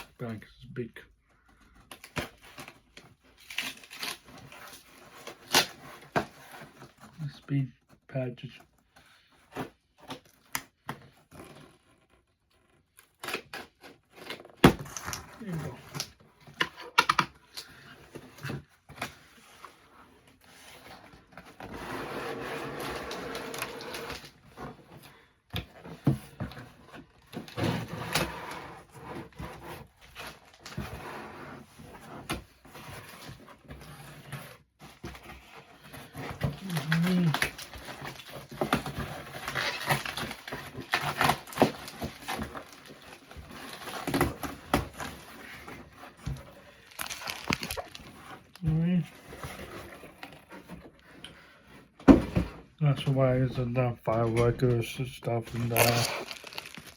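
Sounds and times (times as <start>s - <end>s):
package rustling and crinkling: 35.9s - 51.0s, 55.0s - 56.9s.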